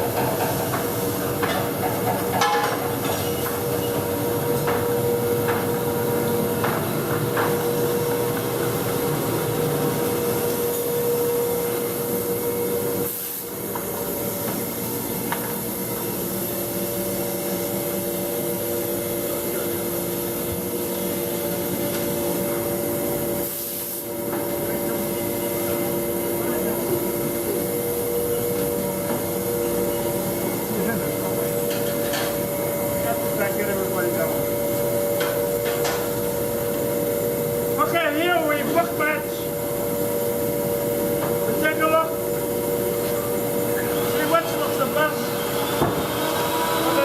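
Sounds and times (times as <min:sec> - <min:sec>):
woodworking machinery humming: 0:24.1 - 0:47.0.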